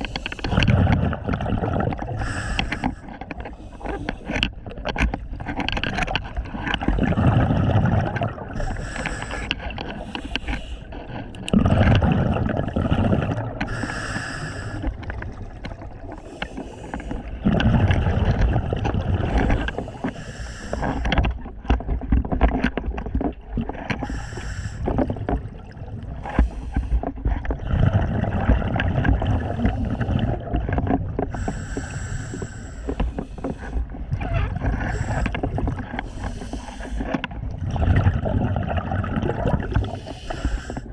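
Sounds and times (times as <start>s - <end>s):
diver breathing through regulator: 0.0s - 1.0s, 2.0s - 4.6s, 7.0s - 18.1s, 19.2s - 21.2s, 24.0s - 25.2s, 26.2s - 27.2s, 29.2s - 30.5s, 31.2s - 33.9s, 34.6s - 37.3s, 39.5s - 40.9s
exhaled air bubbling: 0.0s - 40.9s.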